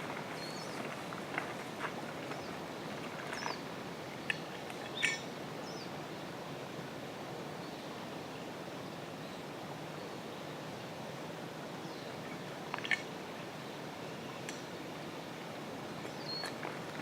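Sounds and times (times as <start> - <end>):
steady background hiss: 0.0 - 17.0
bird chirps: 4.2 - 5.9, 16.0 - 16.6.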